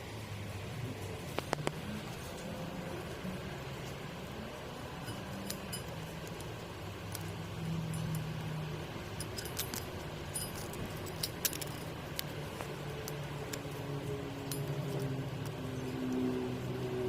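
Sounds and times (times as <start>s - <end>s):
diesel engine humming: 0.0s - 17.0s
metallic clicks and ticks: 5.0s - 13.8s, 14.4s - 16.8s.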